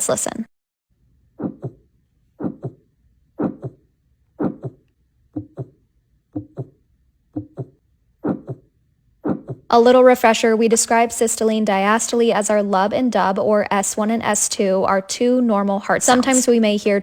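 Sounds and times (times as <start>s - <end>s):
heartbeat with murmur: 1.4s - 1.8s, 2.4s - 3.8s, 4.4s - 9.7s.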